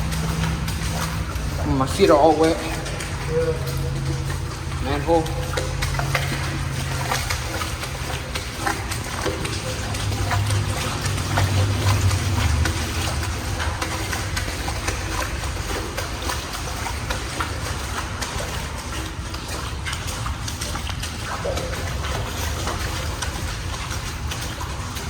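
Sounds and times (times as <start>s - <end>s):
footsteps splashing through water: 0.0s - 25.0s.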